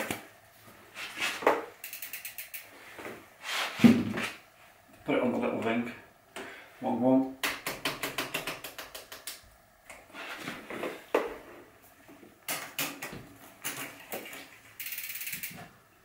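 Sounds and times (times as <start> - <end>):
bicycle freewheel ticking: 1.7 - 2.9, 14.8 - 15.6.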